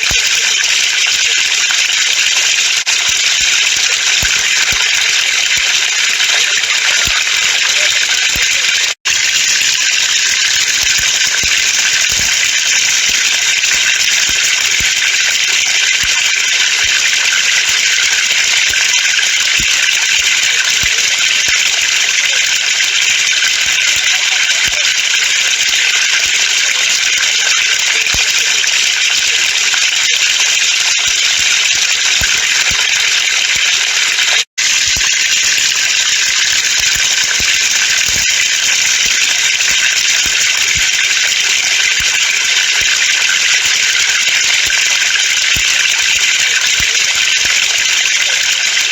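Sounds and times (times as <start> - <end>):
water falling from a pipe: 0.0 - 48.9.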